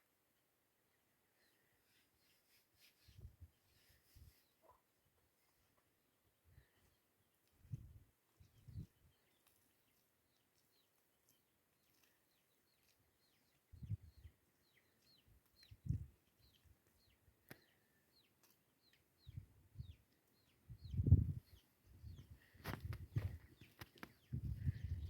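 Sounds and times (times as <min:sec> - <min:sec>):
bird chirping: 0:07.7 - 0:25.0.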